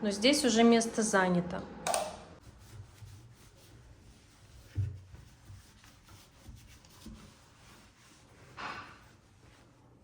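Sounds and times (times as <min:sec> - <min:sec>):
handling and rubbing noises: 0:02.4 - 0:10.0.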